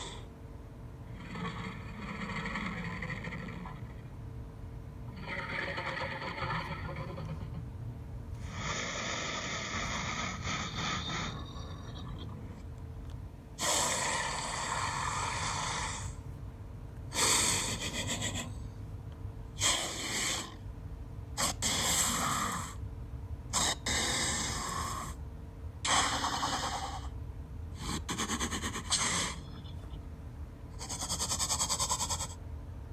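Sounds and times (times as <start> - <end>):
snake hissing: 8.4 - 12.2, 13.6 - 16.2, 17.1 - 18.5, 19.6 - 20.6, 23.6 - 25.1, 28.1 - 29.4.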